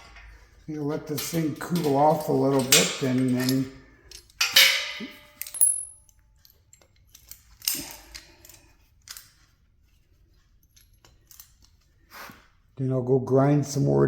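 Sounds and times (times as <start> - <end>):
small metal parts clinking: 1.1 - 9.5, 10.5 - 11.9.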